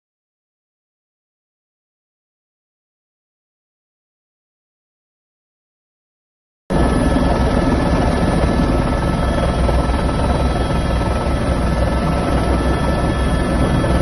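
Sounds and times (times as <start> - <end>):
helicopter rotor beat: 6.7 - 14.0
high turbine whine: 6.7 - 14.0.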